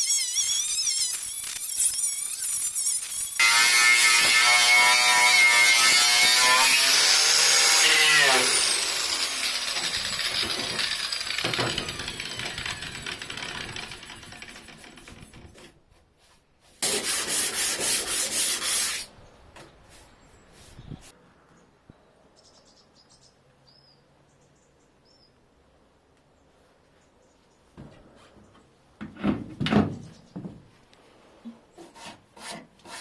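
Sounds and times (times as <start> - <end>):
electric grinder grinding metal: 0.0 - 15.3.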